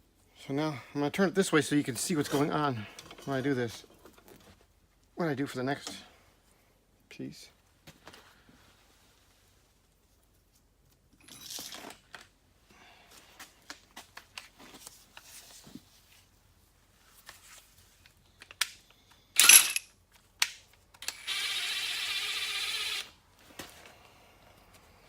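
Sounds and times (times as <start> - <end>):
metal tools clicking and clinking: 19.4 - 19.9.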